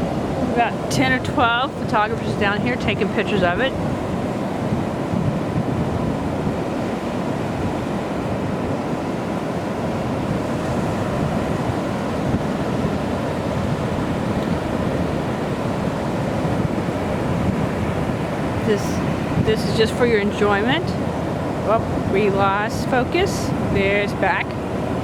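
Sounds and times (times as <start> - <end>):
surf washing onto beach: 0.0 - 25.0
wind rumbling on microphone: 0.0 - 25.0.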